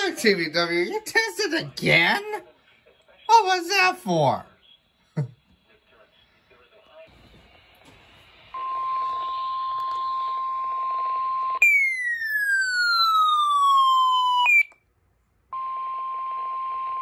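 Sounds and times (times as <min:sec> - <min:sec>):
steady alarm tone: 0:08.6 - 0:14.8.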